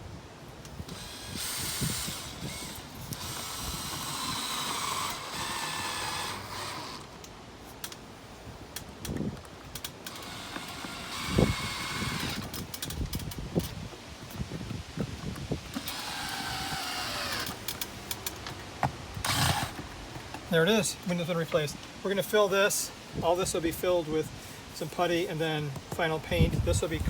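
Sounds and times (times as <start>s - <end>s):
power drill driving screws: 0.7s - 7.3s, 10.0s - 13.0s, 15.7s - 18.4s, 19.2s - 19.9s.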